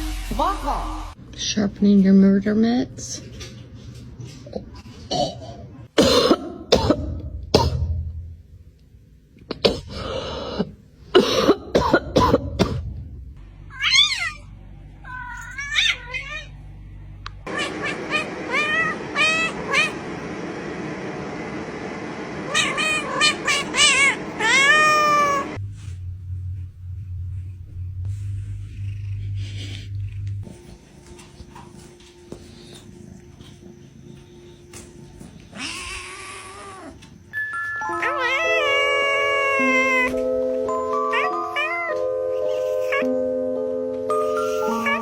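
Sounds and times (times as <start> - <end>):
cats meowing: 13.7 - 16.6, 17.5 - 20.0, 22.5 - 25.6, 35.4 - 37.1, 38.0 - 40.2, 41.1 - 43.1, 44.4 - 45.0.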